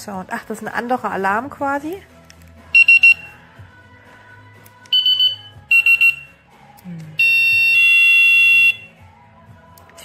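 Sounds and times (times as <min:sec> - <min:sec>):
alarm siren beeps and tone: 0:05.0 - 0:06.3, 0:07.2 - 0:08.9.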